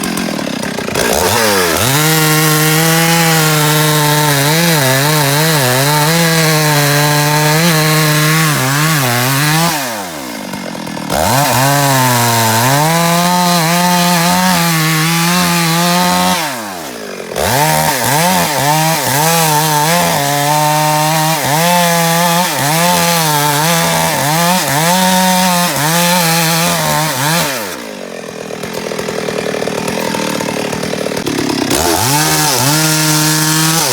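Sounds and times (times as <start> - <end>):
chainsaw engine revving: 0.0 - 33.9.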